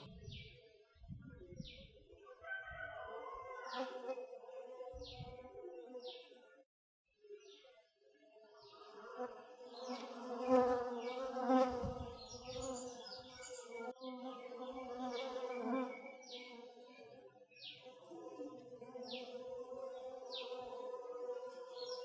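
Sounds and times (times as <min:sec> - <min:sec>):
fly buzzing: 0:08.9 - 0:16.8, 0:18.0 - 0:22.0.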